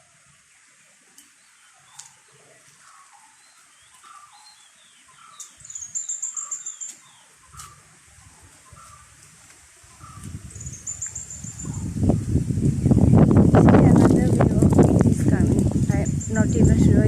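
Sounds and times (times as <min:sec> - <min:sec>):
songbirds chirping: 0:00.0 - 0:17.0
fast high bird trill: 0:04.0 - 0:07.8
low wind rumble: 0:07.4 - 0:17.0.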